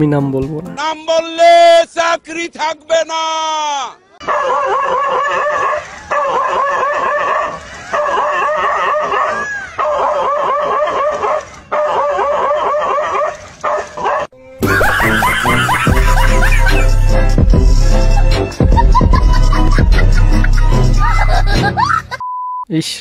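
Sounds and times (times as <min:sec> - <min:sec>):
dog barking and yelping: 0:04.2 - 0:14.3
loud music with heavy bass: 0:14.6 - 0:21.9.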